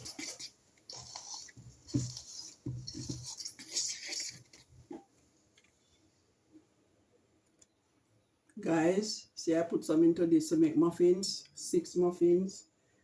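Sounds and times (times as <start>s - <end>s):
batter scraped from mixing bowl: 0.0s - 4.7s.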